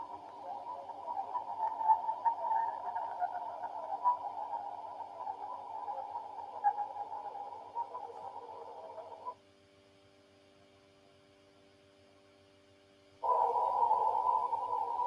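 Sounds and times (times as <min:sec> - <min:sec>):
crackling radio static: 0:00.0 - 0:09.5, 0:12.9 - 0:15.0
faint steady hum: 0:00.0 - 0:15.0.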